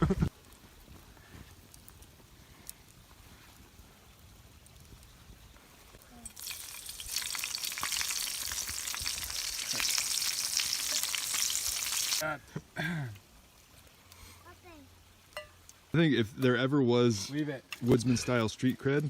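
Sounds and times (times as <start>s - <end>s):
insects sizzling in oil: 6.1s - 12.2s.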